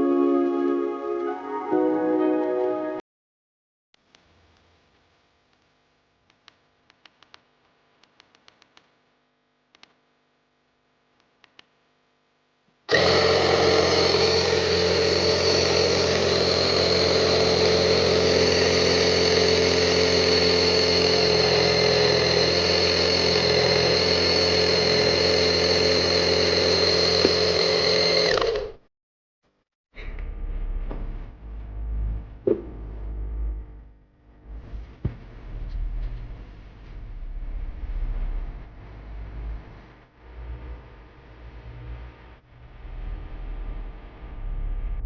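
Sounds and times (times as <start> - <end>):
air compressor buzzing: 12.9 - 28.9.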